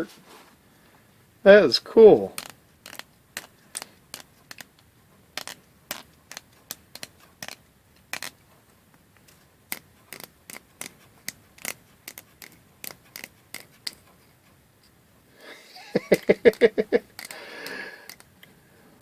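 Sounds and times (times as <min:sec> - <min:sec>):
plastic wrench clicking: 0:02.3 - 0:04.8, 0:09.7 - 0:10.9, 0:11.6 - 0:14.0, 0:16.5 - 0:18.3.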